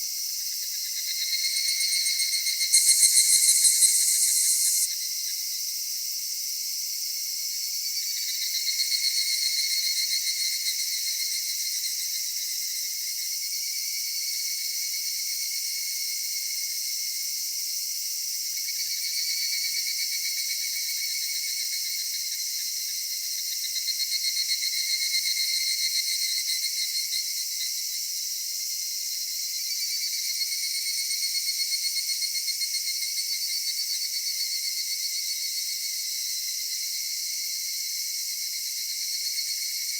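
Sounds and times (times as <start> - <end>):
cicadas singing: 1.5 - 4.9.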